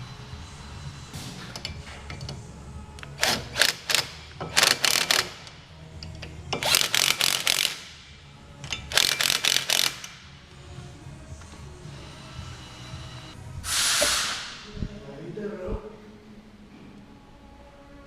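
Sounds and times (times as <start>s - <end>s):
ratchet wrench clicking: 3.2s - 8.0s, 8.6s - 10.2s.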